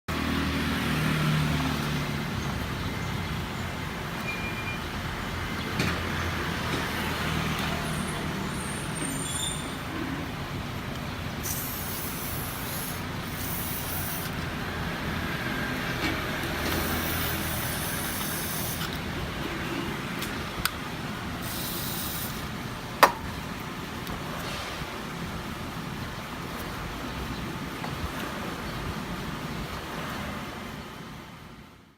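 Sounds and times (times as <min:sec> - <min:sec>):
aerosol spray hissing: 0:11.4 - 0:14.4, 0:16.8 - 0:18.9, 0:21.4 - 0:22.5.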